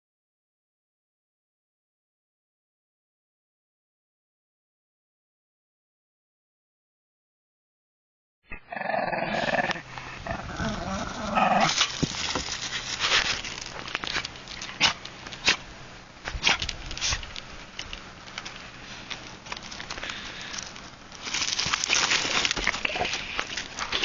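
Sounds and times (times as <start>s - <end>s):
dog growling: 8.6s - 11.8s.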